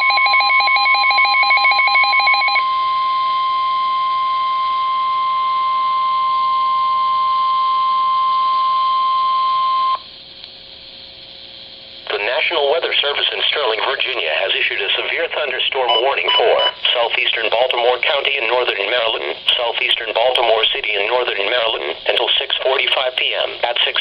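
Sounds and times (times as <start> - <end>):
steady alarm tone: 0.0 - 10.0, 14.7 - 22.6
faint hiss and hum: 2.5 - 24.0
fast pulsing electronic beeping: 15.4 - 21.8.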